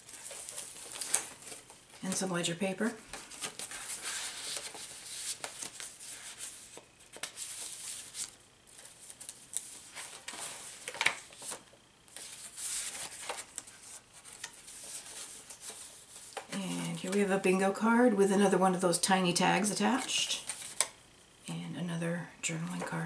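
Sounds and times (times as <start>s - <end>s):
paper pages rustling: 0.0s - 2.3s, 3.0s - 17.3s.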